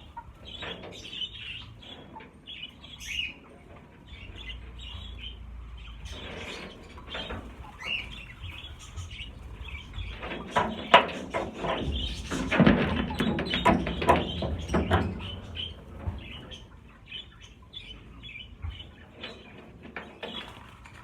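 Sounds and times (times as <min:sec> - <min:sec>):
budgerigars chirping: 0:00.0 - 0:19.5
wings flapping: 0:06.1 - 0:16.6, 0:20.2 - 0:21.0.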